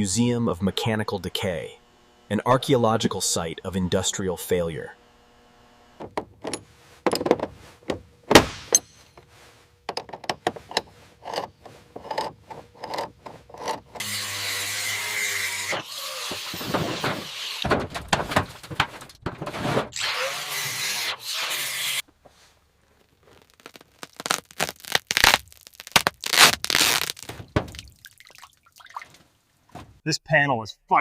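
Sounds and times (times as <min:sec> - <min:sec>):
scraping or sanding: 0:19.4 - 0:22.5.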